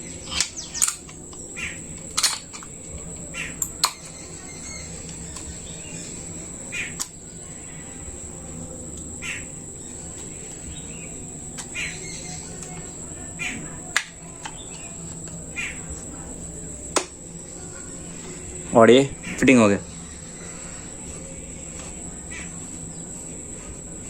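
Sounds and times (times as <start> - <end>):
bird chirps: 0.0 - 18.6
metallic clicks and taps: 2.0 - 4.2.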